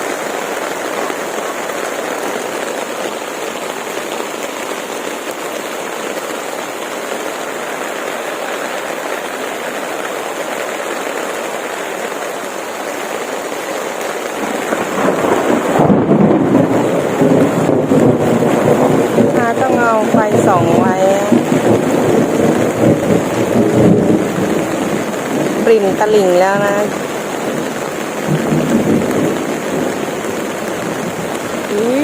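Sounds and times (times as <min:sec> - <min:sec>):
heavy rain falling: 0:00.0 - 0:32.0.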